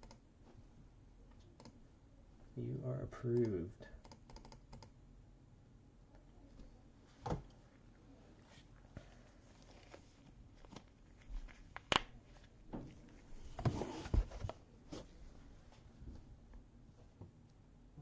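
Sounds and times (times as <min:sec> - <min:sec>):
rustling and thumps: 0:12.7 - 0:16.3.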